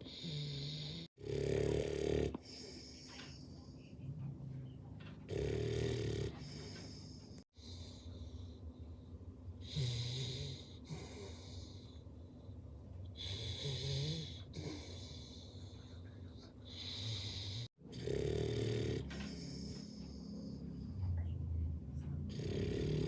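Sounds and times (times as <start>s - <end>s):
person snoring: 0.0s - 3.2s, 5.3s - 7.2s, 9.6s - 11.8s, 13.2s - 15.4s, 16.7s - 20.3s, 22.3s - 23.0s.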